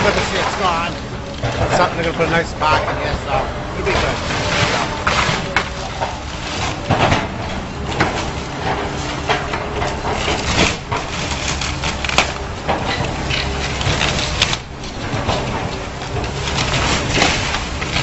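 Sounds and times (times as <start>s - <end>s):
heavy machine engine running: 0.0s - 18.0s
wood cracking and splintering: 0.0s - 18.0s.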